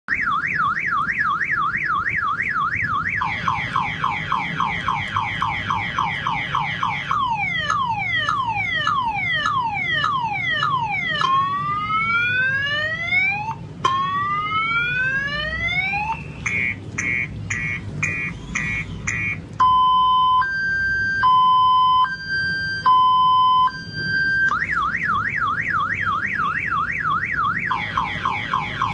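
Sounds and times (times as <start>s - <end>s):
car alarm siren: 0.1s - 28.9s.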